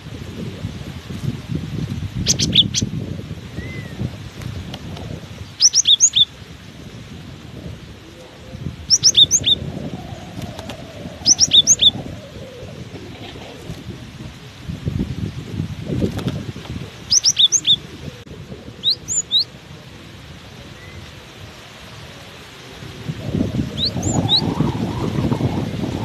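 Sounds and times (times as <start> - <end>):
wind rumble on microphone: 0.0 - 26.0
bird singing high whistled notes: 3.6 - 4.0, 5.6 - 6.3, 8.9 - 12.3, 17.1 - 17.8, 23.7 - 25.4.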